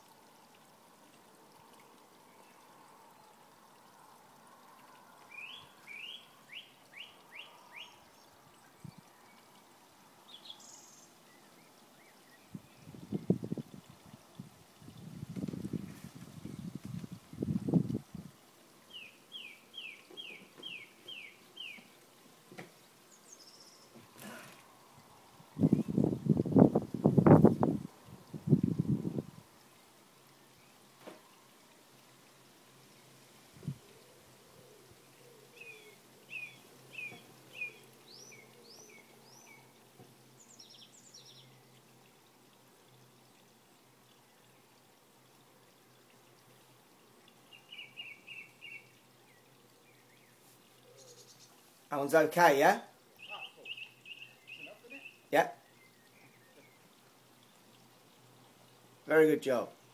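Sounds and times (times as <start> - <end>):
songbird singing: 1.6 - 31.5, 32.9 - 59.9
small bird singing: 5.3 - 9.5, 10.3 - 13.4, 18.9 - 22.0, 23.1 - 24.4, 34.6 - 39.8, 40.4 - 41.8, 47.4 - 51.6, 53.2 - 56.9.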